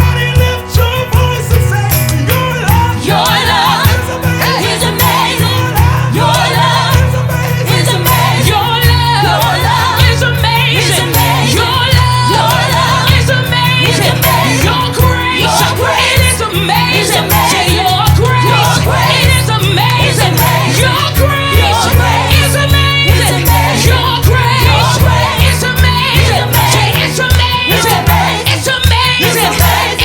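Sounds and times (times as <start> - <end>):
group singing: 0.0 - 30.0
live gospel band: 0.0 - 30.0.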